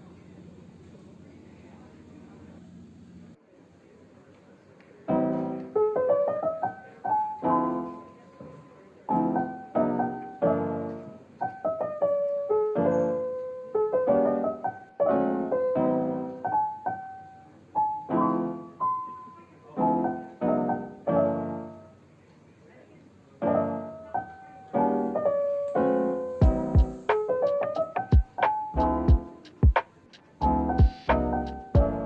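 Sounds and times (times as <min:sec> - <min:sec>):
piano music: 0:05.1 - 0:22.0, 0:23.4 - 0:32.0.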